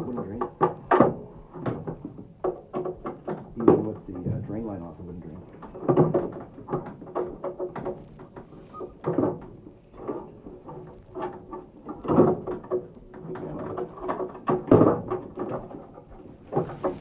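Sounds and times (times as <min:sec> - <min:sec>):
metal parts clunking and rattling: 0:00.0 - 0:04.6, 0:05.4 - 0:17.0.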